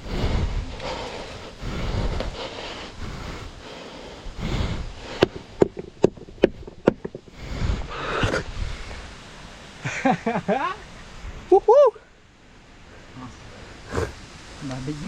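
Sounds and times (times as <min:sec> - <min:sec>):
wind buffeting microphone: 0:00.0 - 0:09.8.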